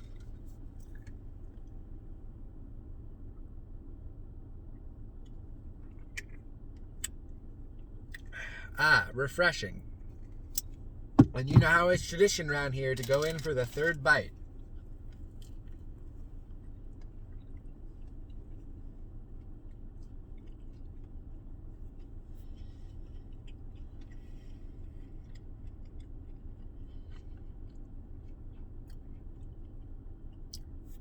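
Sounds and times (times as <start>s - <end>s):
steady low hum: 0.0s - 31.0s
person chewing crunchy food: 14.6s - 30.7s.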